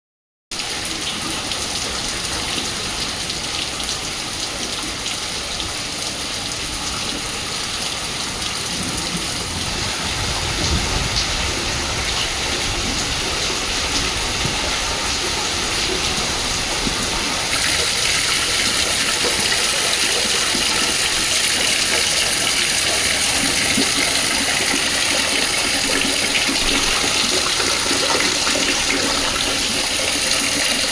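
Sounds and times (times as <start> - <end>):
heavy rain and hail clattering: 7.2 - 30.9.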